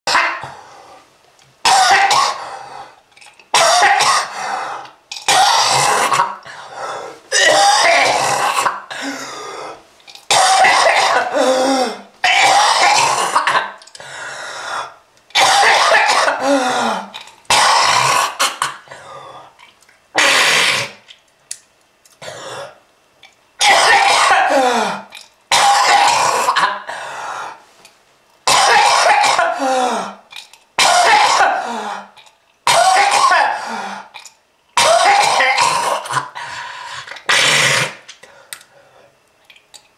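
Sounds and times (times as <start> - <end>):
person coughing and hacking: 1.6 - 2.4, 3.5 - 4.4, 5.2 - 6.4, 7.3 - 9.3, 10.3 - 13.8, 15.3 - 19.1, 20.2 - 21.0, 23.6 - 26.9, 28.5 - 30.2, 30.8 - 34.1, 34.8 - 36.4, 37.0 - 38.0.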